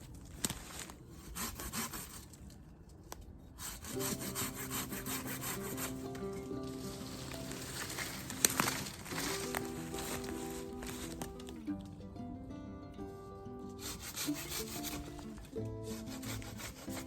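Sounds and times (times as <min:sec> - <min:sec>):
hand saw cutting wood: 0:00.7 - 0:02.4, 0:03.6 - 0:11.6, 0:13.8 - 0:17.0
sharp crack: 0:03.6 - 0:11.8
background music with steady tones: 0:03.9 - 0:17.0.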